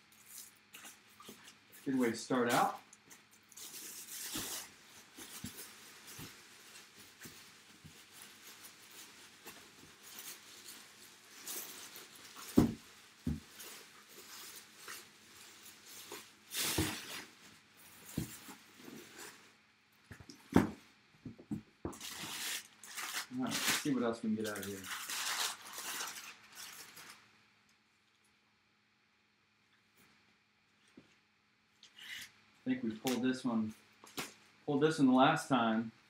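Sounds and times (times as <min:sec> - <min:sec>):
packaging rustling: 0:00.1 - 0:19.5, 0:21.9 - 0:27.3.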